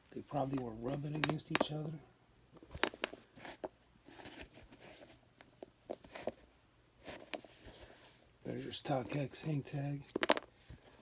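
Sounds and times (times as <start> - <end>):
sharp taps and clicks: 1.2 - 1.8.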